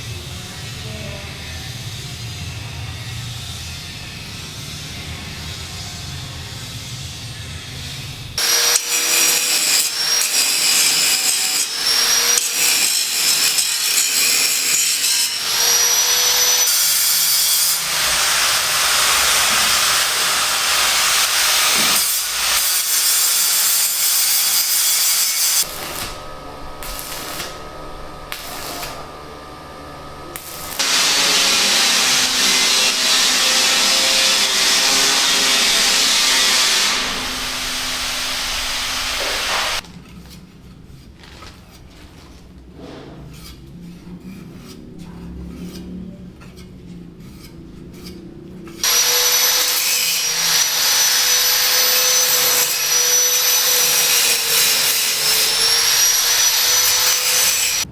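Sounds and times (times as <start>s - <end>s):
power tool cutting noise: 8.4s - 27.7s, 30.3s - 39.8s, 48.8s - 57.9s.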